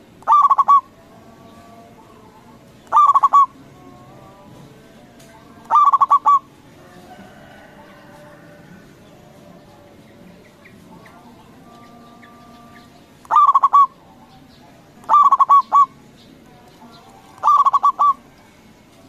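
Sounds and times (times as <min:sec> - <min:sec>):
dove cooing: 0:00.0 - 0:01.0, 0:02.3 - 0:04.5, 0:05.6 - 0:08.7, 0:12.2 - 0:14.0, 0:15.0 - 0:16.0, 0:17.3 - 0:18.5.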